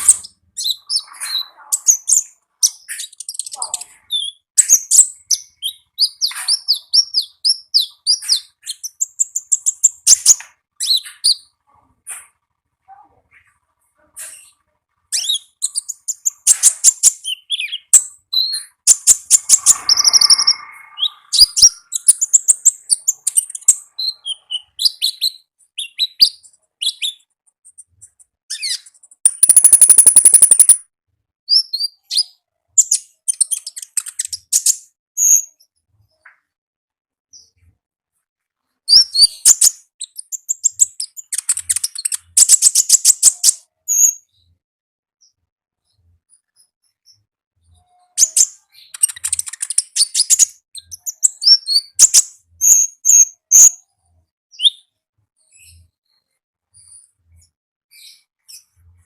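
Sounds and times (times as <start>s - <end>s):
bird chirping and trilling: 0.0s - 12.3s, 14.2s - 27.3s, 28.5s - 30.8s, 31.5s - 35.6s, 38.9s - 44.3s, 47.8s - 53.9s, 54.5s - 54.9s
fast buzzing bird trill: 29.3s - 30.8s.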